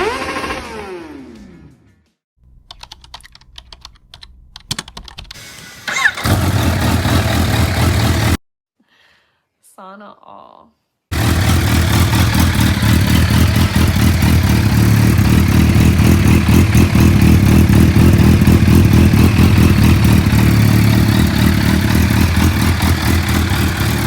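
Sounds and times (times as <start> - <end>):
motorcycle engine running: 5.9 - 8.4, 11.1 - 24.0.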